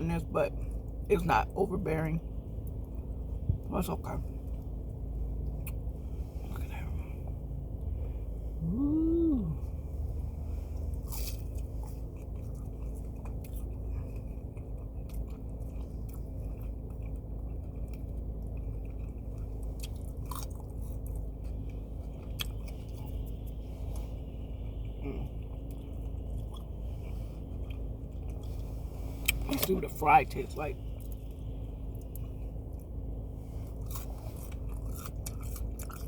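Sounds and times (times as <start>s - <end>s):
steady low hum: 0.0s - 36.0s
chewing crunchy food: 10.7s - 29.9s, 30.8s - 36.0s.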